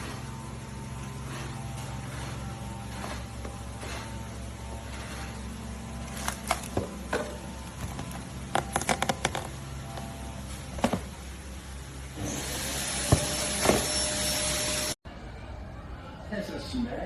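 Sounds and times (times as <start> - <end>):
steady low hum: 0.0 - 12.3.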